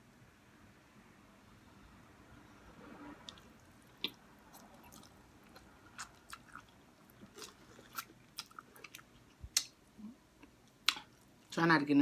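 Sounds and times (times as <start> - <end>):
wet chewing and mouth smacks: 3.3 - 9.8, 10.4 - 11.5.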